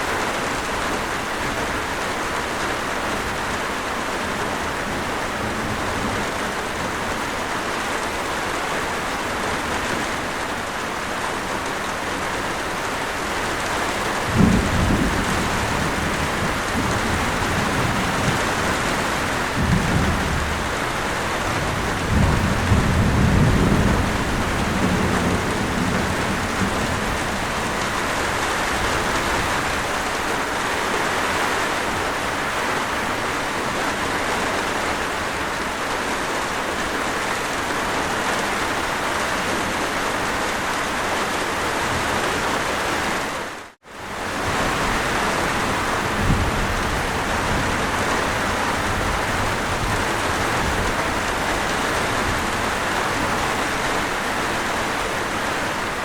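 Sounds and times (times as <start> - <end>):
heavy rain falling: 0.0 - 56.0
low rolls of thunder: 14.1 - 30.0, 44.2 - 53.7
thunder clap: 14.1 - 30.0, 44.3 - 53.4.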